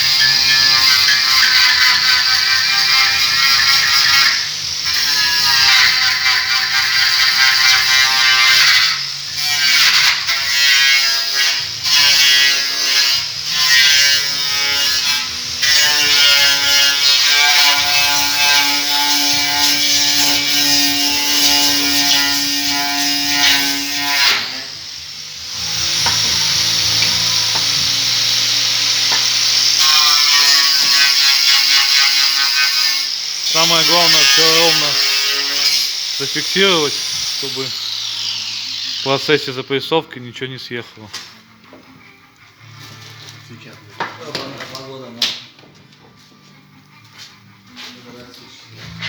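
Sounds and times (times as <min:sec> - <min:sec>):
pneumatic impact wrench hammering: 0:17.0 - 0:36.2.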